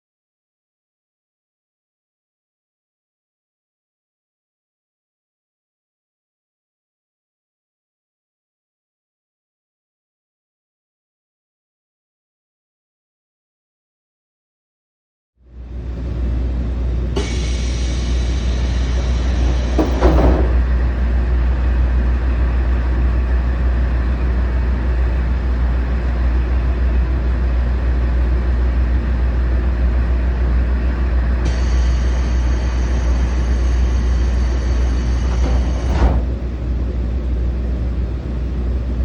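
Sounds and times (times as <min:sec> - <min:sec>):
diesel engine rumble: 0:15.5 - 0:39.0
high steady whine: 0:15.5 - 0:39.0
short knock: 0:19.8 - 0:20.6.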